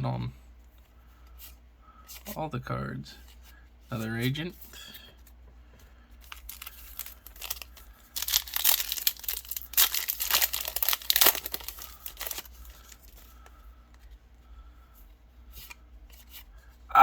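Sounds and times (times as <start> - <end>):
foil pack tearing and crinkling: 6.2 - 13.3.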